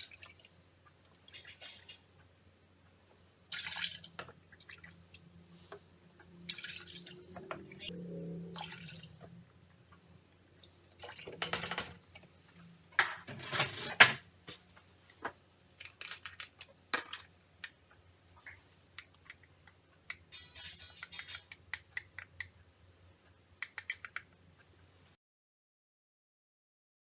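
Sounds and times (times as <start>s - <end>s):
utensils scraping and clattering: 1.3s - 2.1s, 13.2s - 14.2s, 20.3s - 21.6s.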